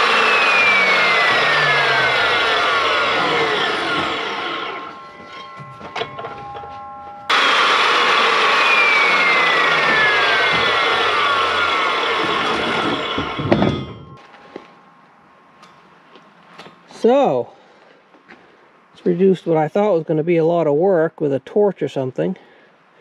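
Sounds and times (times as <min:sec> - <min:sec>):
chop saw cutting steel: 0:00.0 - 0:06.3, 0:07.3 - 0:14.0
faint metallic ringing: 0:02.9 - 0:07.4, 0:13.4 - 0:17.6.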